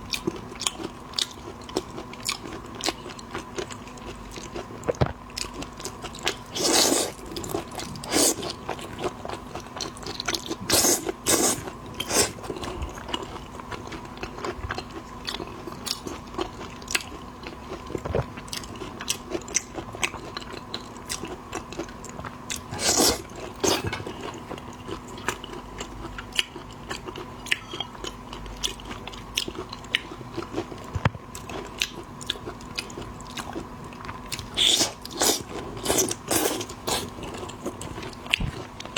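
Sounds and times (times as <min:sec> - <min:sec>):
faint steady hum: 0:00.0 - 0:38.9
chewing with small clicks: 0:00.1 - 0:06.4, 0:07.2 - 0:10.6, 0:11.6 - 0:22.7, 0:23.4 - 0:38.9.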